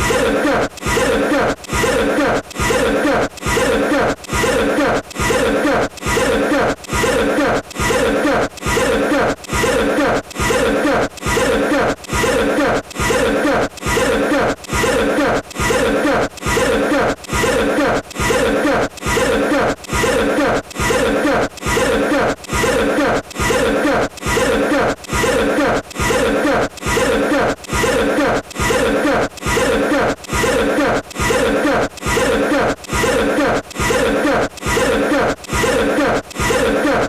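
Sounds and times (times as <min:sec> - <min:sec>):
looped short cough: 0:00.9 - 0:13.3, 0:13.9 - 0:22.9.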